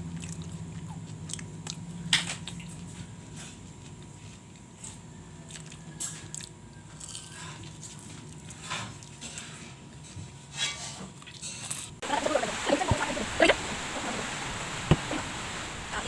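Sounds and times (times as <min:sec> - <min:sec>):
person chewing food: 0:00.0 - 0:02.9
low steady hum: 0:12.0 - 0:16.0.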